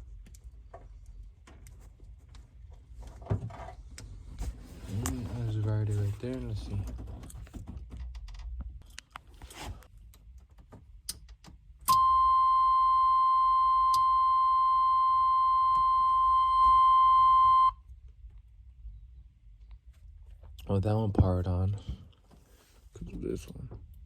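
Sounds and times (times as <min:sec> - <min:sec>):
steady electronic beep: 0:11.9 - 0:17.8.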